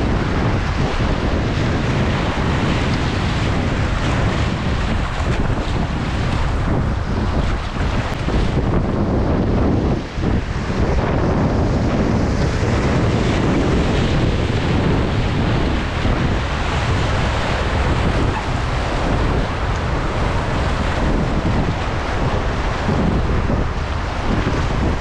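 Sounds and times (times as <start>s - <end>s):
wind buffeting microphone: 0.0s - 25.0s
river rapids rushing: 10.1s - 25.0s.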